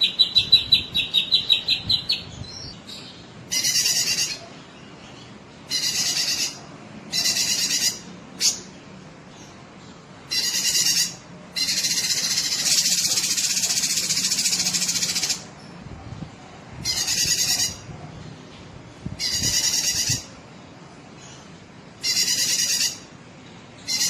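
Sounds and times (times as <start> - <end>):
bird trilling: 0.0 - 4.5, 5.7 - 8.7, 10.3 - 15.5, 16.8 - 17.9, 19.2 - 20.3, 22.0 - 23.1, 23.8 - 24.0.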